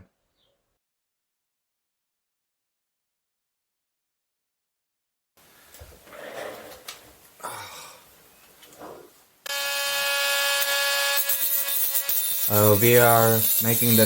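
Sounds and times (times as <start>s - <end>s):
power cutting tool whining: 9.5s - 14.0s.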